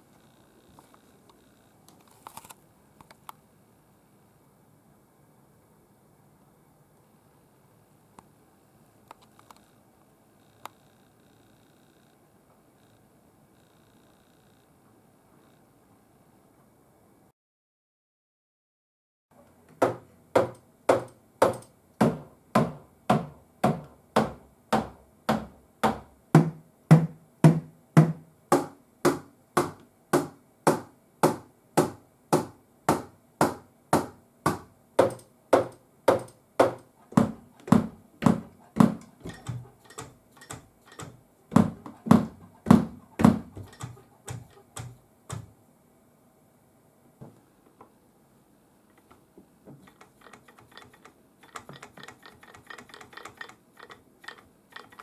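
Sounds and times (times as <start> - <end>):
stick tapping drum pad: 19.8 - 45.5.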